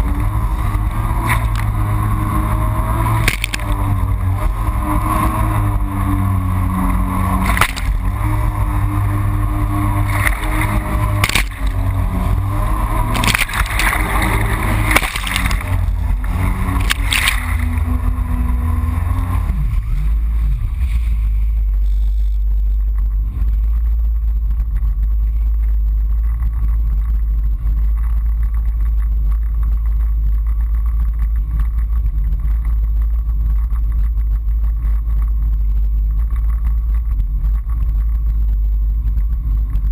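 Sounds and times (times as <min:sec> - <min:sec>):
jet ski engine running: 0:00.0 - 0:39.9
muffled low rumble: 0:00.0 - 0:39.9
water splashing against hull: 0:00.6 - 0:04.8, 0:07.0 - 0:18.9.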